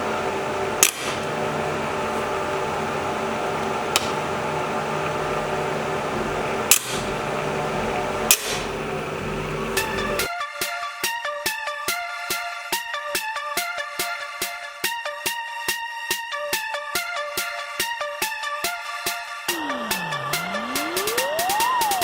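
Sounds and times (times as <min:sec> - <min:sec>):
electrical hum: 0:00.0 - 0:10.3, 0:19.5 - 0:22.0
sharp snaps: 0:00.8 - 0:01.4, 0:04.0 - 0:04.3, 0:06.7 - 0:07.2, 0:08.3 - 0:08.9, 0:19.5 - 0:22.0.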